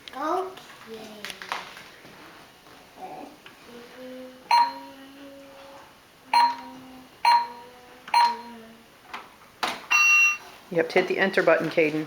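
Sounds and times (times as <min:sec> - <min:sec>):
short ringing tone: 0:09.9 - 0:10.4.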